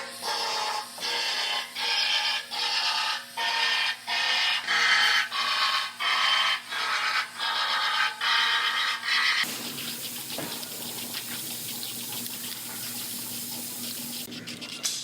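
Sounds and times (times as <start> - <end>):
sanding block scraping: 6.9 - 14.7.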